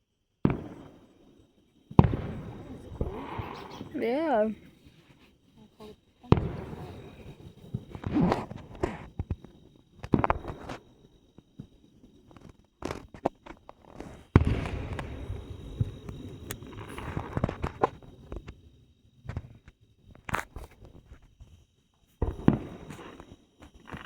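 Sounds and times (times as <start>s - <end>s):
fireworks booming: 0.4s - 4.8s, 5.9s - 10.9s, 14.0s - 18.5s, 22.2s - 23.2s
fireworks crackling: 0.5s - 21.5s, 22.2s - 24.0s.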